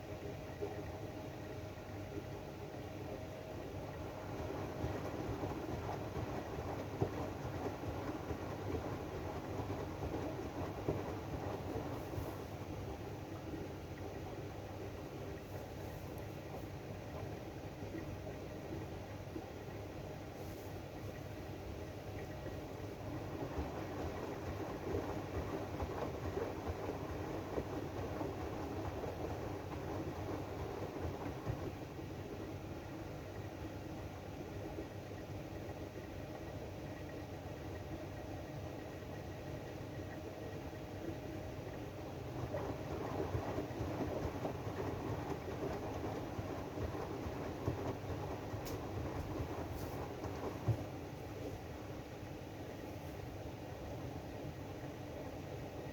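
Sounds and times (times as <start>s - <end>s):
washing machine drum rumble: 41.8s - 51.5s.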